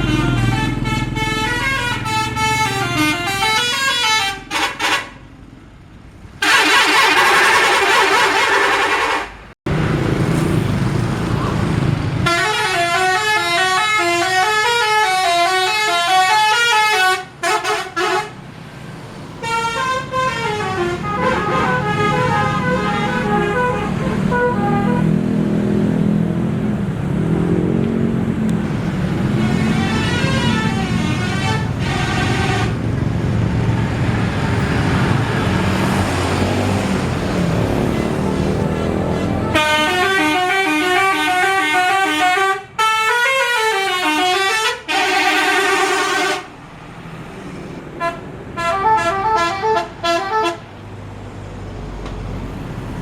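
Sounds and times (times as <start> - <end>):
musical air horns playing melodies: 0.0 - 5.2, 6.4 - 9.5, 12.2 - 18.4, 19.4 - 25.2, 29.2 - 32.8, 39.0 - 46.5, 48.0 - 50.6
bus engine: 0.0 - 53.0
traffic noise: 0.0 - 53.0.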